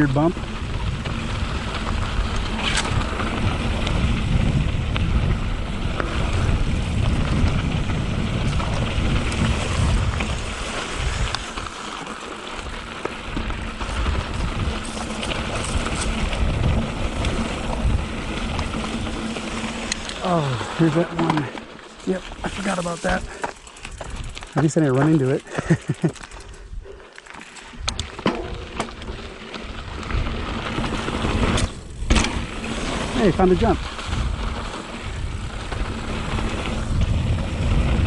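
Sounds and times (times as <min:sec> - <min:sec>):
wind rushing over microphone: 0:00.0 - 0:11.7, 0:12.6 - 0:20.9, 0:29.6 - 0:38.0
bike rattles and clicks: 0:00.0 - 0:38.0
tyres rumbling on dirt trail: 0:00.0 - 0:38.0.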